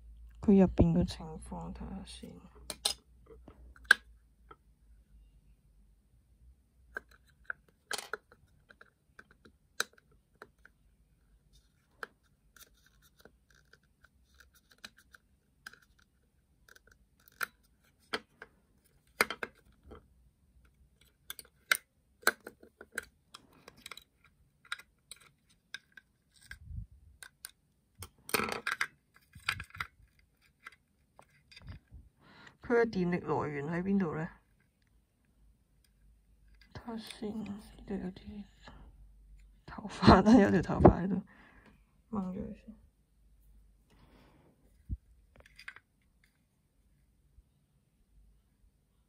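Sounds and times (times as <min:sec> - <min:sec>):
plastic parts clicking and tapping: 0:02.6 - 0:04.6, 0:06.9 - 0:10.8, 0:11.6 - 0:32.0, 0:45.3 - 0:46.4
plastic parts rattling: 0:06.9 - 0:10.8, 0:11.6 - 0:20.0, 0:20.9 - 0:32.0.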